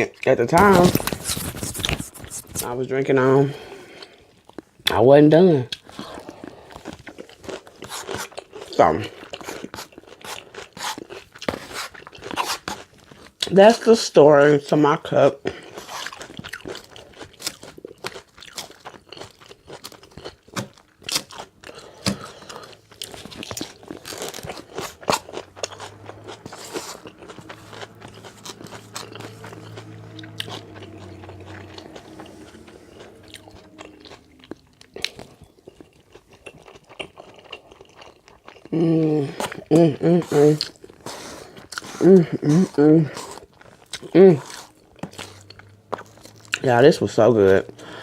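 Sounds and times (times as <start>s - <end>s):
open-mouthed crunchy chewing: 0.0s - 5.0s, 5.6s - 13.5s, 15.4s - 48.0s
low steady hum: 21.8s - 36.8s.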